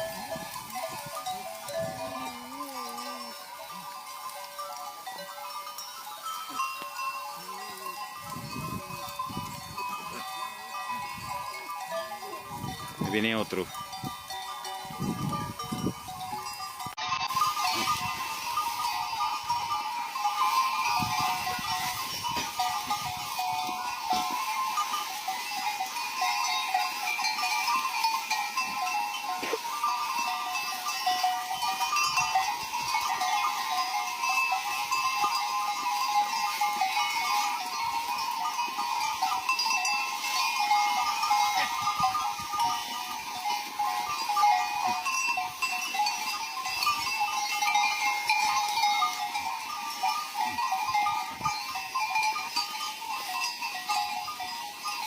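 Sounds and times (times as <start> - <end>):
herd of goats bleating: 0.0 - 54.9.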